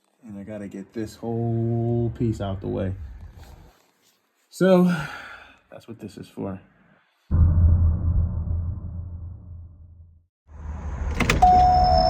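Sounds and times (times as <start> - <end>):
deep electronic bass boom: 7.3 - 10.8.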